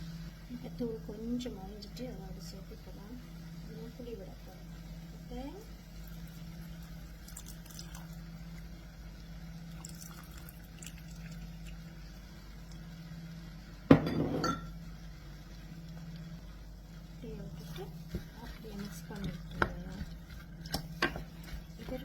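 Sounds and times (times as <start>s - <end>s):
steady low hum: 0.0s - 22.0s
glassy clink: 13.9s - 14.8s.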